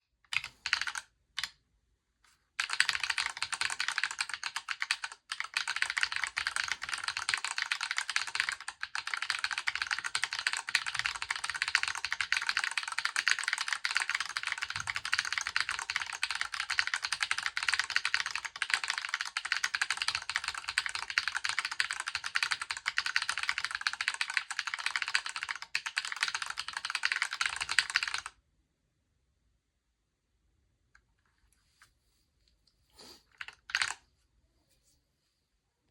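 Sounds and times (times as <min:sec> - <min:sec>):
fast typing on mechanical keyboard: 0:00.3 - 0:01.5, 0:02.6 - 0:28.4, 0:33.3 - 0:34.0.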